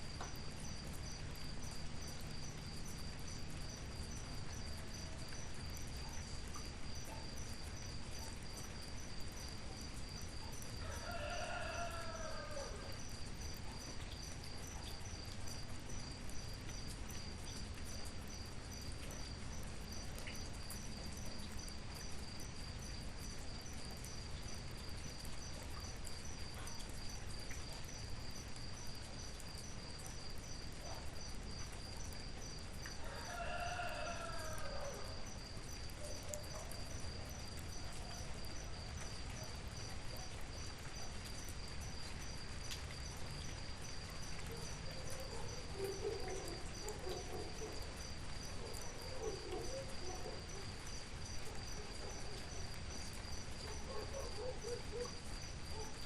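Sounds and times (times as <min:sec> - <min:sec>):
crickets chirping: 0:00.0 - 0:56.0
rooster crowing: 0:10.8 - 0:13.0, 0:33.0 - 0:35.2.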